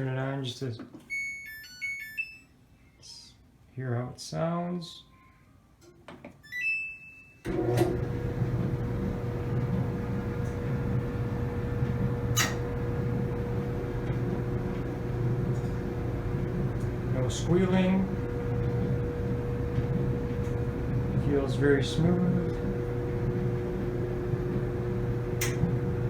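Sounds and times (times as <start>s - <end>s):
dryer drum humming and tumbling: 7.5s - 26.0s.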